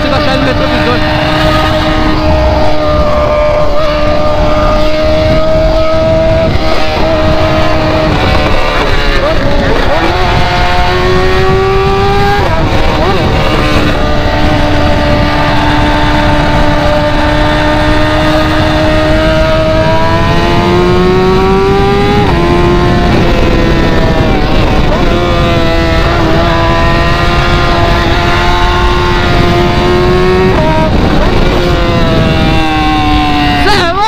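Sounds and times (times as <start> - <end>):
car exhaust droning: 0.3 - 26.7.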